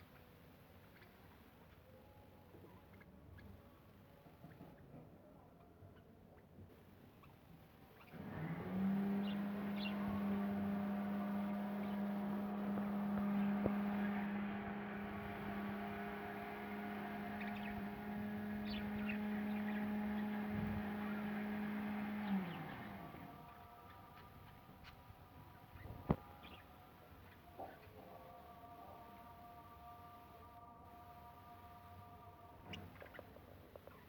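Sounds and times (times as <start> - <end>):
electric motor hum: 8.1 - 25.0.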